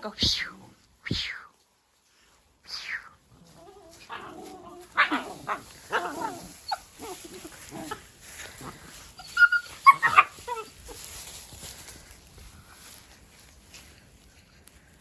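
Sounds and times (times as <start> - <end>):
puppies barking and yipping: 3.7 - 11.3.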